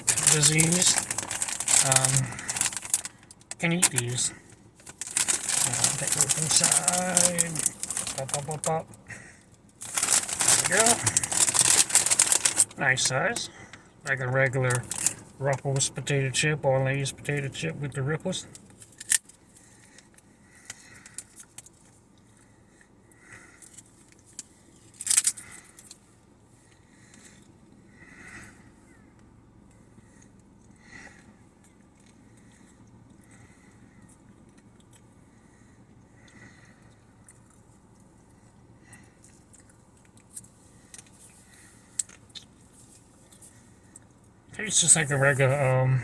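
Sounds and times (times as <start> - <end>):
person chewing potato chips: 0.0 - 4.2, 4.8 - 8.7, 9.8 - 12.8, 30.2 - 35.2, 35.8 - 44.1
plastic chip bag crinkling: 0.0 - 9.0, 9.8 - 13.4, 14.7 - 15.9, 24.2 - 26.0, 44.6 - 45.8.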